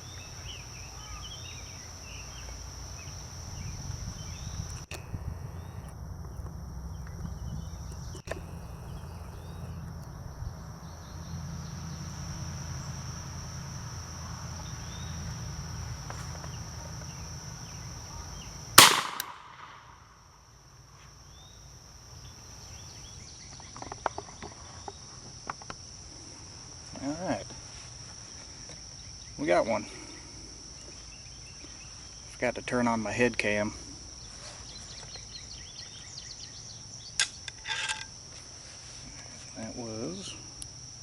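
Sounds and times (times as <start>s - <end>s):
high-pitched insect drone: 0.0s - 18.7s
shotgun shot: 18.8s - 20.0s.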